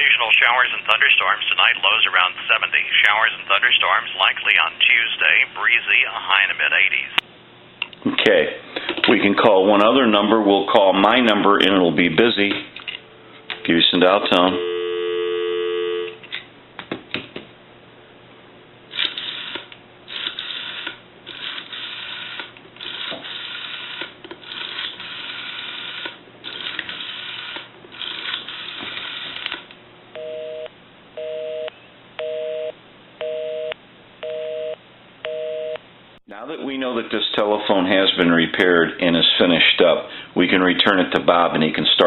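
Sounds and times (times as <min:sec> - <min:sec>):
telephone dial tone: 0:14.6 - 0:16.2
rotary dial rattling: 0:19.0 - 0:29.7
two-tone busy signal beep: 0:30.2 - 0:35.8.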